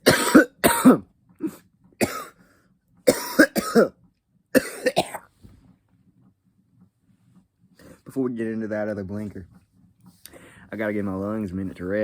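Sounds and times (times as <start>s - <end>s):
man coughing hard: 0.0s - 2.4s, 3.1s - 4.0s, 4.6s - 5.3s.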